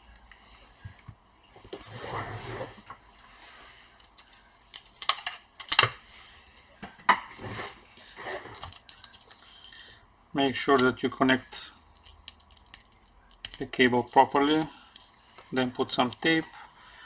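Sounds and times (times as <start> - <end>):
small hard parts clicking: 11.9 - 14.2.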